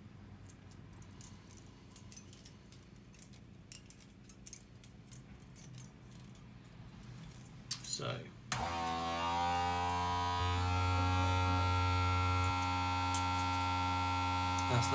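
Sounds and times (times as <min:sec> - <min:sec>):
vacuum pump humming: 0:08.5 - 0:14.9.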